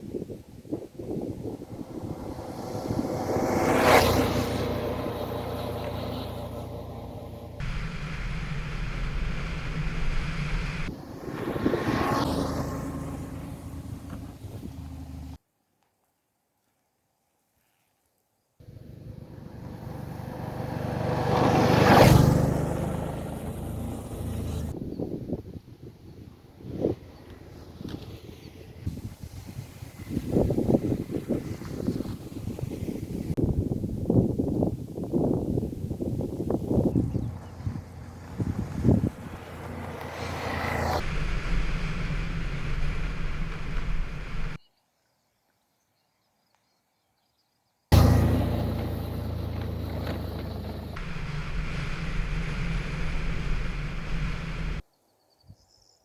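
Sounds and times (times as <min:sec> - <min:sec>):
wind rushing over microphone: 0:00.0 - 0:05.7, 0:07.6 - 0:13.4, 0:19.4 - 0:44.6
motor vehicle passing by: 0:01.2 - 0:15.4, 0:18.6 - 0:24.8, 0:36.7 - 0:44.6, 0:47.9 - 0:54.8
motorcycle engine running: 0:47.9 - 0:54.8
faint bird chirps: 0:54.9 - 0:56.0.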